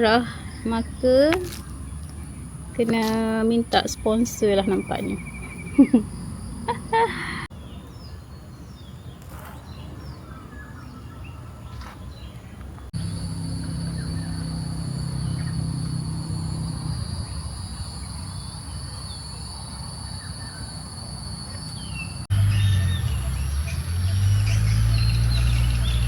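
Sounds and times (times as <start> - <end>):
birds chirping: 0.0 - 26.0
high-pitched insect drone: 13.0 - 22.2.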